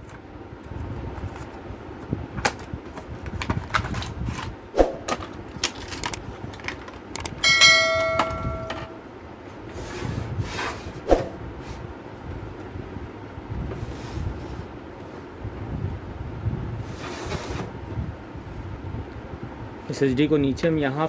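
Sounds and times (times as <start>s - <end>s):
metal parts clicking and knocking: 5.6s - 8.9s
sharp metallic clang: 7.4s - 9.0s.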